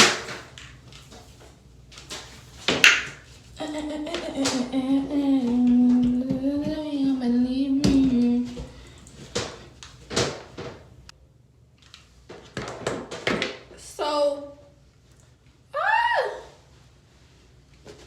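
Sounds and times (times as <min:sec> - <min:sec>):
woman humming: 0:03.6 - 0:08.8
knocks of things handled: 0:05.4 - 0:07.0, 0:07.8 - 0:10.9.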